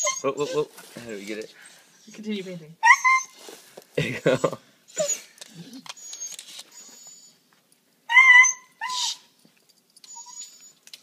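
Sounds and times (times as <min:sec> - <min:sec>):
dog whimpering: 0:00.0 - 0:00.7, 0:02.0 - 0:03.4, 0:04.4 - 0:07.4, 0:08.1 - 0:09.2, 0:10.0 - 0:10.8.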